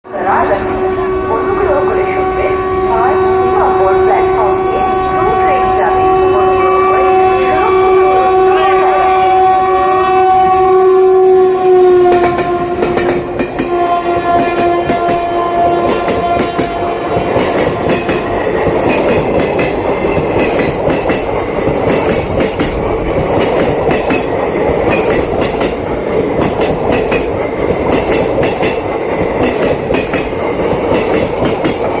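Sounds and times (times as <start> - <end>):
train rumbling: 0.0 - 32.0
locomotive horn blast: 0.1 - 18.6
wheels clacking over rail joints: 12.0 - 32.0.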